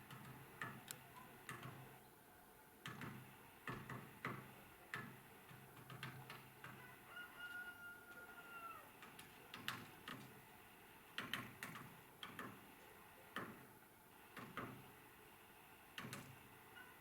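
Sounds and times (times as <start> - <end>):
woodpecker tapping on wood: 0.0 - 1.8, 2.8 - 6.8, 9.0 - 10.4, 11.2 - 12.6.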